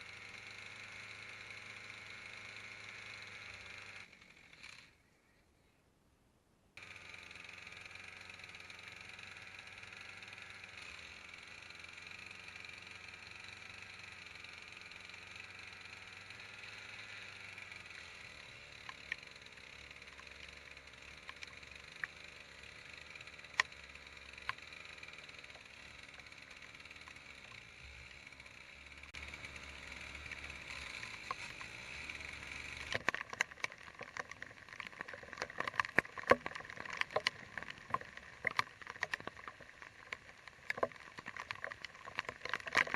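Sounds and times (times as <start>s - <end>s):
raindrops ticking close by: 32.8s - 42.9s.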